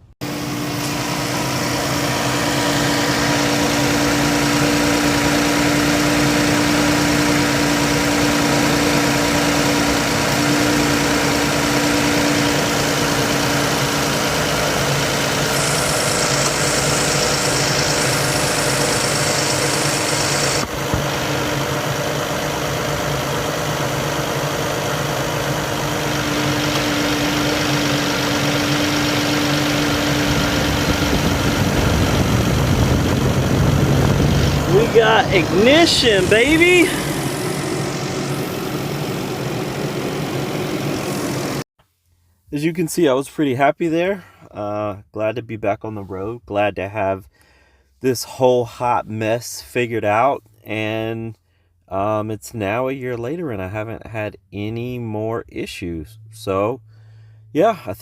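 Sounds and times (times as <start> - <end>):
minivan engine idling: 0.2 - 41.6.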